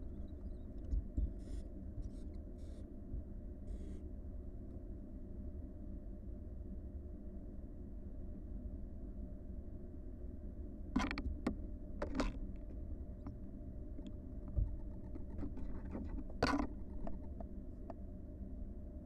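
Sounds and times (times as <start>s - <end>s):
steady low hum: 0.0s - 19.0s
owl nestlings scratching: 14.4s - 17.4s.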